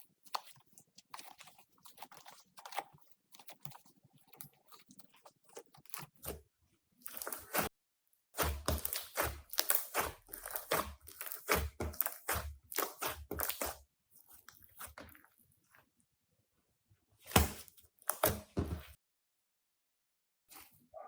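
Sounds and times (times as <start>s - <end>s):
slime crackling and popping: 8.4s - 13.8s.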